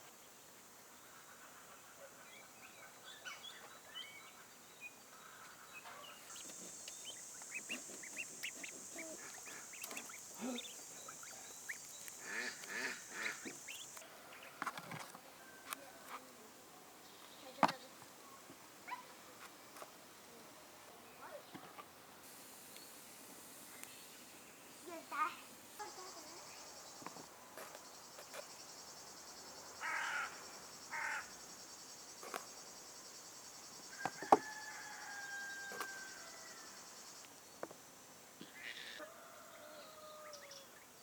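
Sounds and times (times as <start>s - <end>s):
steady high hiss: 0.0s - 14.6s, 15.3s - 38.7s
poultry calling: 5.2s - 14.7s.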